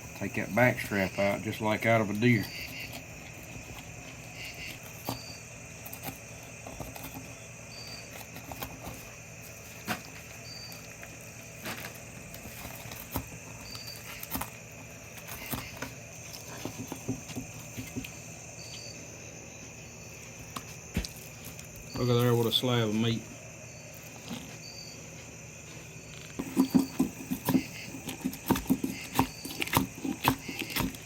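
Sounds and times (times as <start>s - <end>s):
steady low hum: 0.0s - 31.0s
knife cutting and scraping fish: 2.0s - 18.4s, 25.8s - 31.0s.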